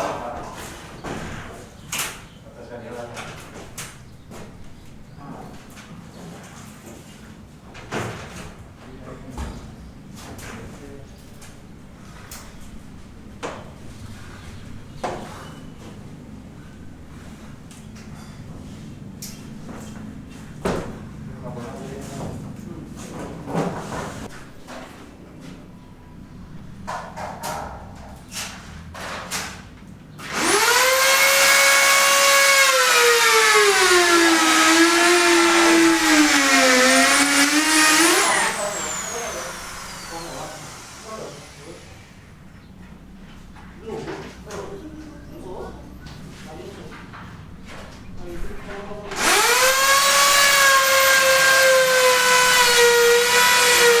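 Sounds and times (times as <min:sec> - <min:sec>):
power tool motor whining: 0:30.2 - 0:42.2, 0:49.1 - 0:54.0.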